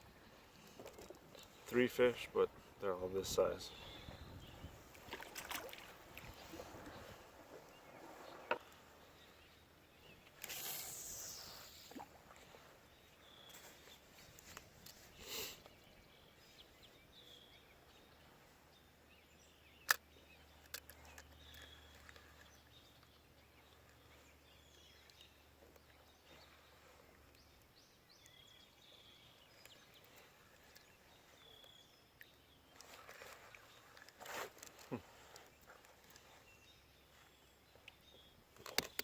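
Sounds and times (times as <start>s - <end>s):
faint high chirps: 10.4s - 12.1s.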